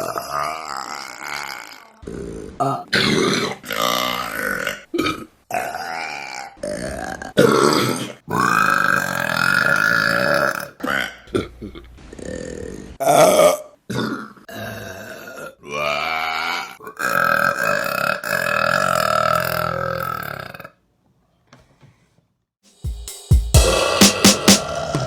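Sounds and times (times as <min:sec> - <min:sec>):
electronic beat music: 0:22.7 - 0:25.0.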